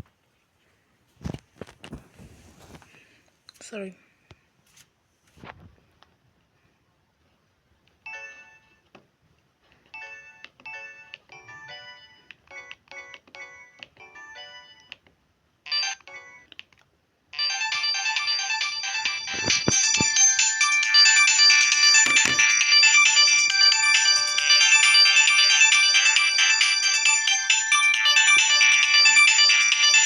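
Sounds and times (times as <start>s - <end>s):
electronic ringtone melody: 17.4s - 30.0s.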